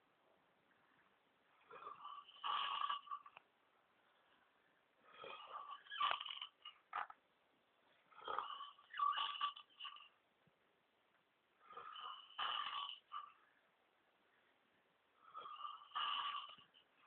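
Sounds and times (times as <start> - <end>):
quiet breathing: 0.0 - 7.0, 7.7 - 10.4, 11.2 - 17.0
person snoring: 1.6 - 3.4, 5.0 - 6.6, 8.1 - 10.1, 11.6 - 13.3, 15.2 - 16.8.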